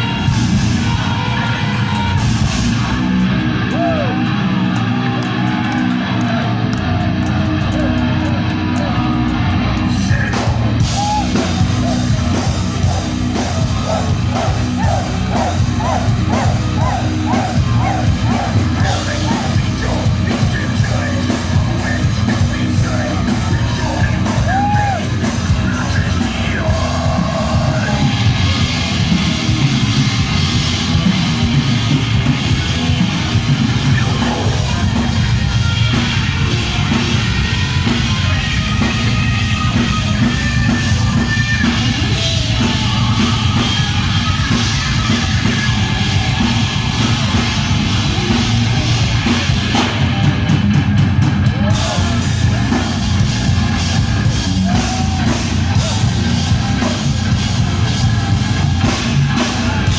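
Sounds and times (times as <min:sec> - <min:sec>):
distorted guitars: 0:00.0 - 0:59.9
drum kit: 0:00.0 - 0:59.9
shouted vocals: 0:03.5 - 0:09.3, 0:10.0 - 0:28.7, 0:39.7 - 0:50.2, 0:51.5 - 0:59.9.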